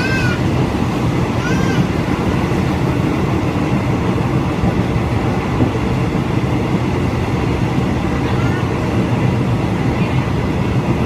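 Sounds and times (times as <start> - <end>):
train wheels rumbling on track: 0.0 - 11.0.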